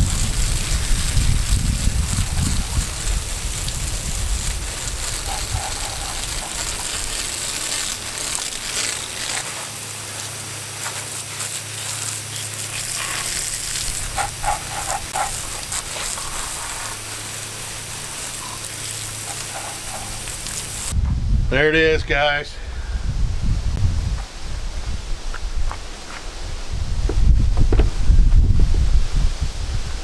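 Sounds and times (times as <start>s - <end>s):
garden hose spraying water: 0.0s - 21.0s.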